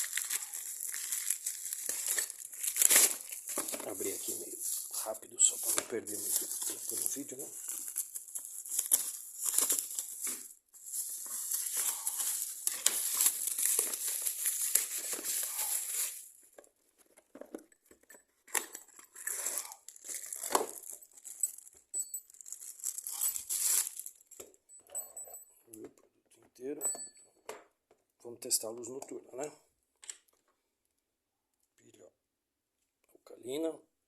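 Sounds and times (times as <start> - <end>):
packaging rustling: 0.0 - 24.4.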